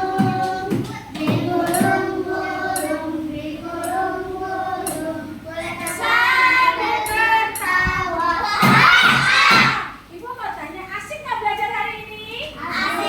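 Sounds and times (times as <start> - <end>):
children singing: 0.0 - 10.0, 12.6 - 13.0.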